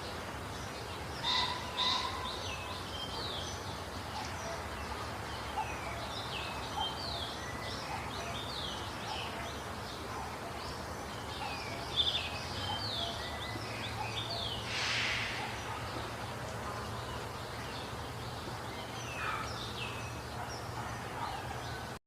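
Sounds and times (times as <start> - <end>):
birds chirping and singing: 0.0 - 22.0
brief hiss: 14.6 - 15.6.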